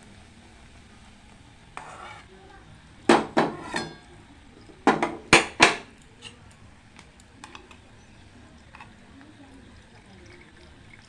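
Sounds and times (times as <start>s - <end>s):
kitchen containers knocking: 3.1s - 4.0s, 4.8s - 5.9s.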